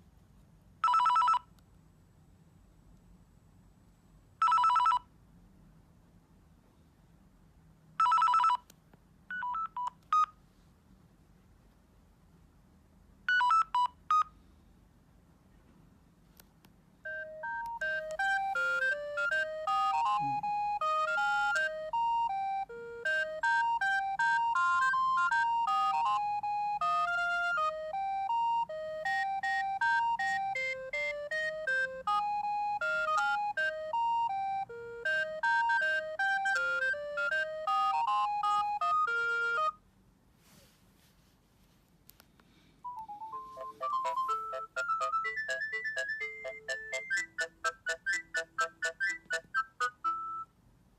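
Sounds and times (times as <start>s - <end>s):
phone ringtone melody: 0.8s - 1.5s, 4.4s - 5.1s, 8.0s - 8.6s, 13.3s - 14.3s, 17.0s - 39.8s, 42.9s - 50.5s.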